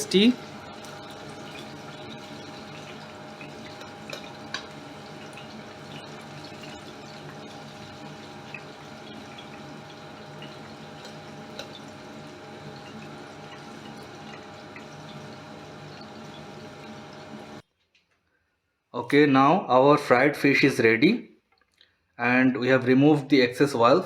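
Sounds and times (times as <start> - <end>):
hot oil crackling and popping: 0.0 - 17.6.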